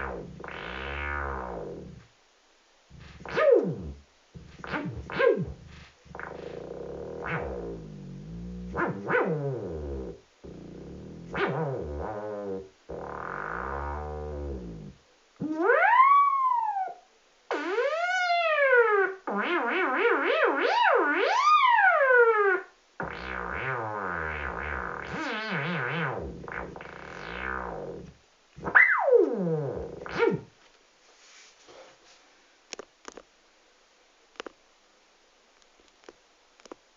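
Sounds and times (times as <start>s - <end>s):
buzzy synthesized tones swooping: 0.0s - 2.0s, 2.9s - 15.9s, 21.4s - 30.5s
upward and downward synth sweep: 21.2s - 30.4s.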